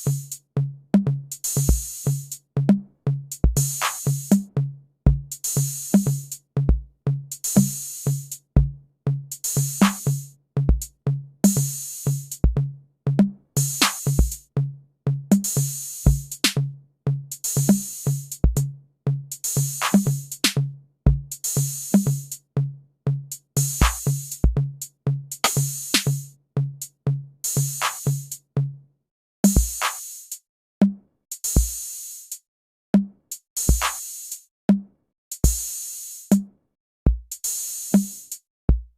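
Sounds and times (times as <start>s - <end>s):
kick drum thumps: 37.1s - 37.3s.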